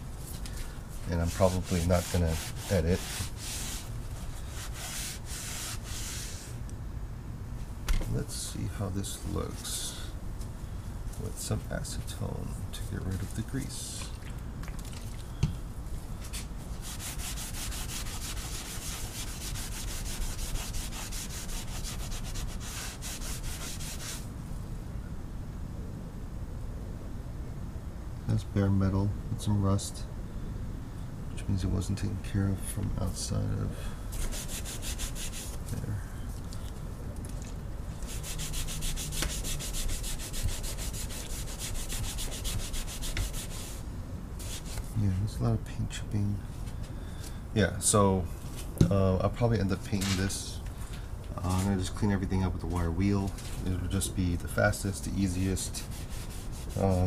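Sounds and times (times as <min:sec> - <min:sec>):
vise being scrubbed: 0:00.9 - 0:06.6, 0:16.4 - 0:24.2, 0:34.1 - 0:35.7, 0:38.0 - 0:43.8, 0:55.2 - 0:57.0.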